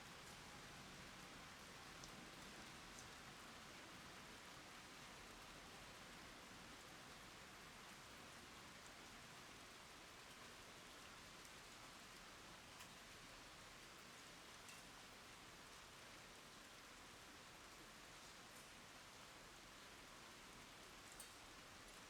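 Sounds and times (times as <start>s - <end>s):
rain hissing on ground: 0.1s - 22.0s.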